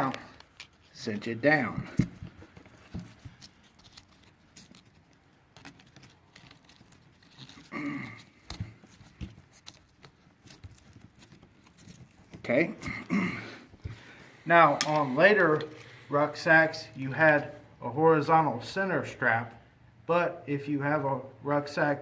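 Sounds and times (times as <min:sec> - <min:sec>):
strap clicking and rubbing on metal: 0:00.0 - 0:13.0, 0:13.6 - 0:16.0
person's voice: 0:14.4 - 0:22.0.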